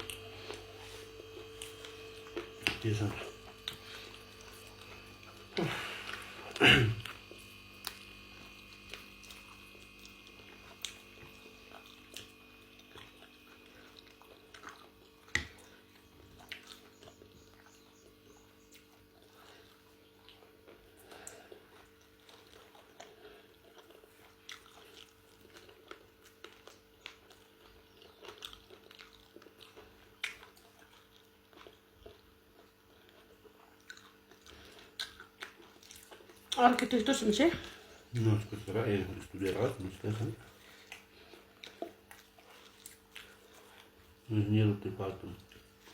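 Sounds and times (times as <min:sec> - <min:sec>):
steady low hum: 0:00.0 - 0:30.2, 0:30.8 - 0:45.9
person chewing crisp food: 0:00.0 - 0:45.9.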